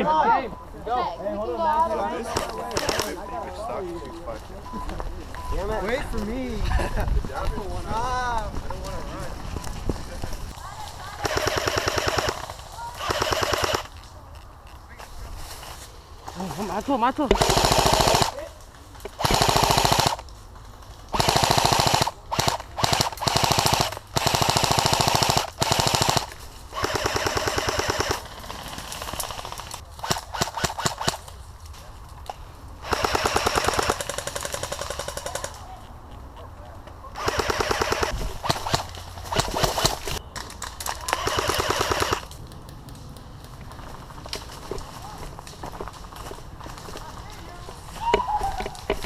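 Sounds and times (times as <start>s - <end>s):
airsoft rifle bursts: 11.2s - 13.9s, 17.3s - 18.4s, 19.1s - 20.2s, 21.1s - 31.3s, 32.8s - 35.6s, 37.2s - 40.2s, 40.9s - 42.3s.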